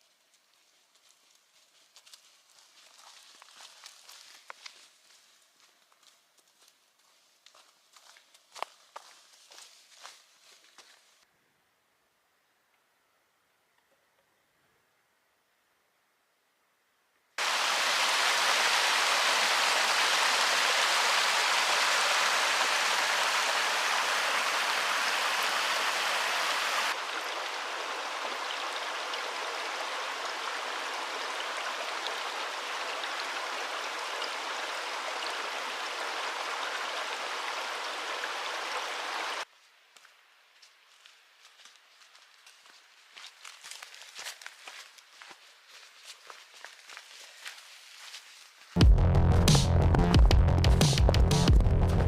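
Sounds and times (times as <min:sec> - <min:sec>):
stream rushing: 0:17.4 - 0:39.5.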